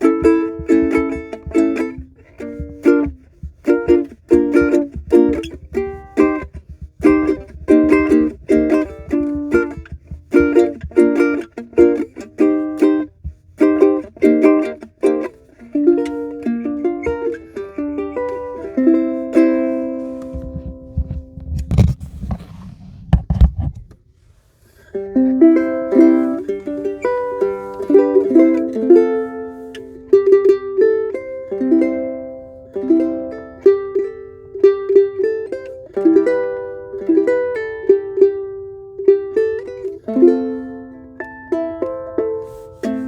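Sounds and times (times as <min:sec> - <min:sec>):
acoustic guitar picked melody: 0:00.0 - 0:22.6, 0:24.4 - 0:43.0
low thumps: 0:00.0 - 0:24.2.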